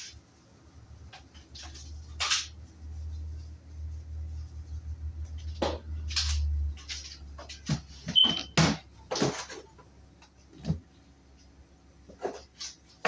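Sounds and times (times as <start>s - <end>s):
rustles and knocks of containers: 1.0s - 2.8s, 5.2s - 13.0s
short high beep: 8.2s - 8.6s.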